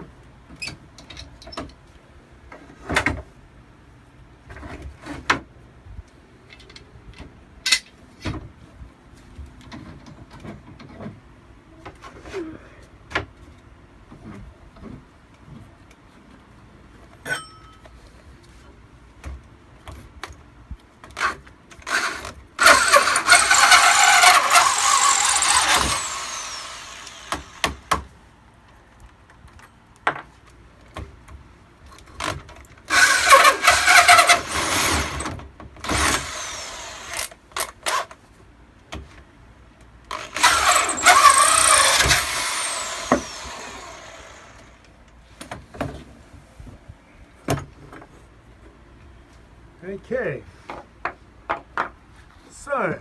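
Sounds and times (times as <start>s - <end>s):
handheld power tool running: 21.9s - 27.9s, 32.9s - 37.3s, 40.1s - 44.8s.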